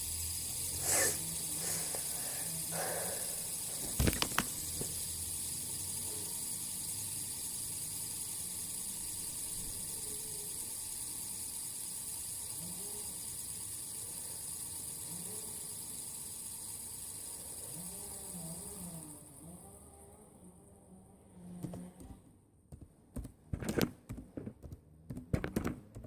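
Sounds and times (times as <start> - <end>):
steady hiss: 0.0 - 19.5.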